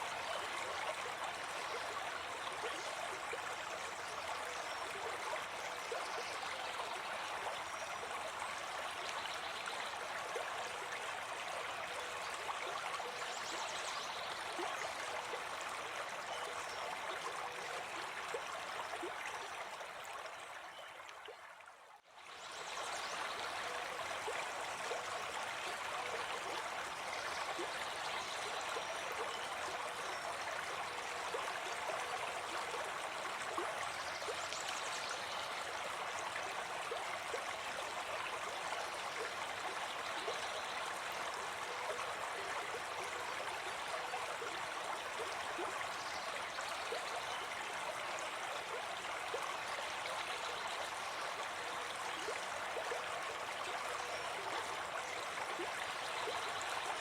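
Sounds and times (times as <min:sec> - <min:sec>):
stream babbling over rocks: 0:22.7 - 0:57.0.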